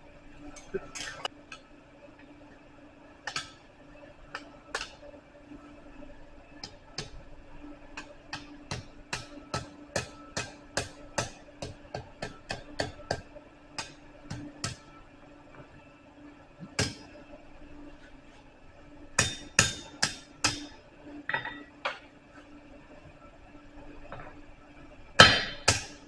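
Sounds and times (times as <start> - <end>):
hammer striking steel on anvil: 19.2 - 20.6, 25.2 - 26.0.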